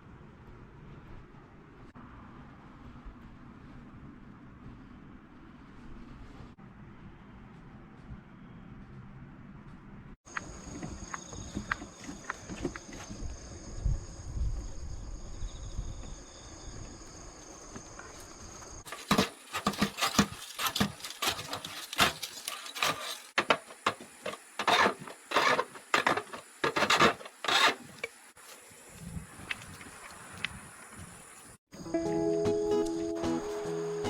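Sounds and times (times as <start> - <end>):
insects trilling: 10.3 - 31.6
hand tool rasping strokes: 18.9 - 28.2.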